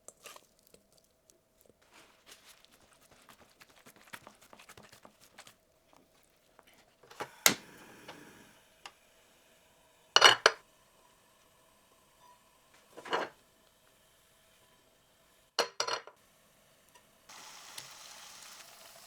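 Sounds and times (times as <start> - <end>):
kitchen utensils and dishes clattering: 10.2 - 10.6, 12.2 - 13.4, 15.6 - 16.2.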